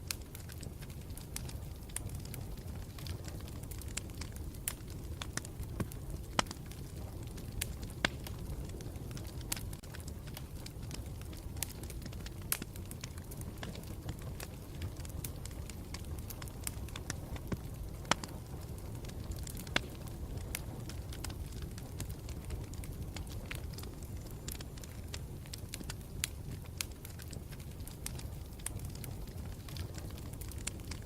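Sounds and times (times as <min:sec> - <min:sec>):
campfire crackling and popping: 0:00.0 - 0:31.0.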